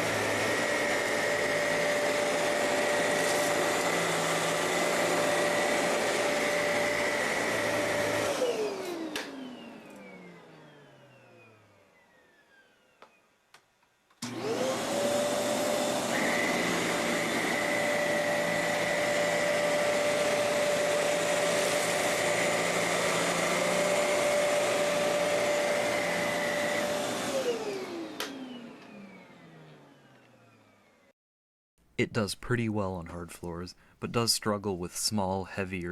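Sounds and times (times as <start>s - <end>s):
vacuum cleaner motor whining: 0.0s - 13.4s, 14.2s - 31.1s
click: 9.1s - 10.1s, 28.2s - 28.9s.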